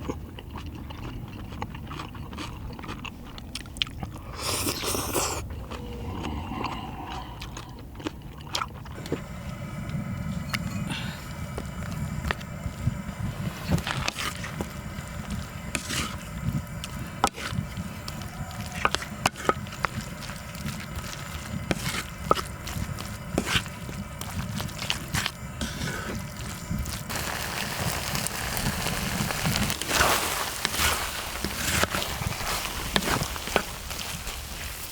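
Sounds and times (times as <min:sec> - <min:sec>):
low burner rumble: 0:03.7 - 0:34.9
food sizzling: 0:08.9 - 0:34.9.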